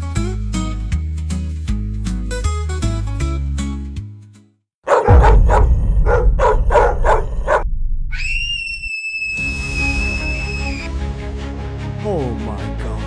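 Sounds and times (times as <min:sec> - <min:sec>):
dog barking: 0:04.8 - 0:07.7
low bass rumble: 0:05.1 - 0:08.9
rising whistle-like tone: 0:08.1 - 0:11.0
background music: 0:09.6 - 0:13.0.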